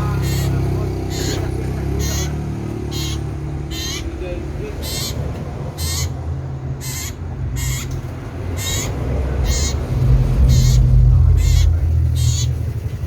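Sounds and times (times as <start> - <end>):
bird calling: 0.0 - 13.0
low rumble: 8.0 - 13.0.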